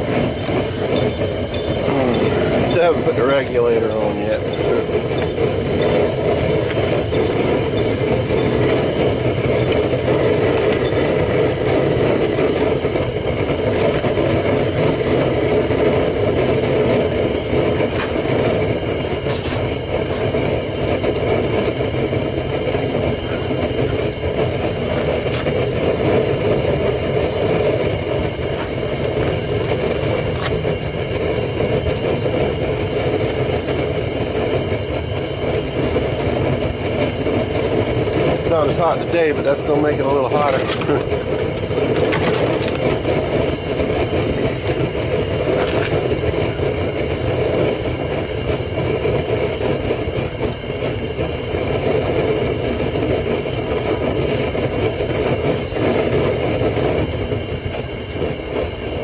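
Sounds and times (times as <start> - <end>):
propane burner rushing: 0.0 - 59.0.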